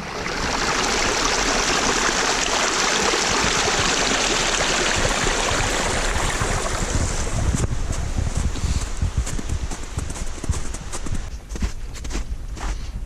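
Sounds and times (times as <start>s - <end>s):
mountain stream rushing: 0.0s - 7.6s.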